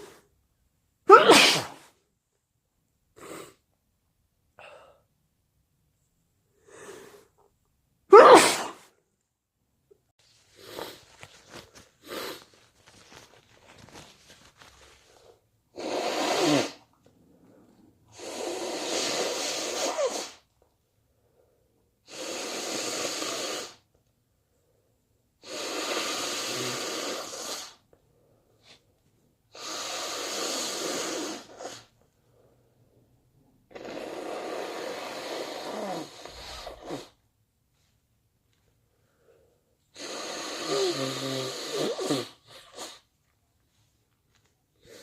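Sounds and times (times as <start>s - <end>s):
person blowing nose: 1.1s - 2.0s, 3.2s - 3.6s, 8.1s - 8.9s, 10.4s - 17.0s, 18.1s - 20.5s, 22.0s - 23.9s, 25.4s - 27.8s, 29.5s - 32.0s, 33.7s - 37.2s, 39.9s - 43.1s.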